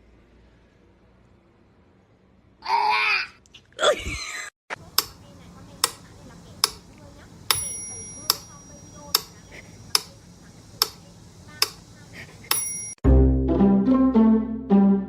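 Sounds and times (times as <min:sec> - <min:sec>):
clock ticking: 0:04.8 - 0:13.0
short bell-like ring: 0:12.5 - 0:13.0.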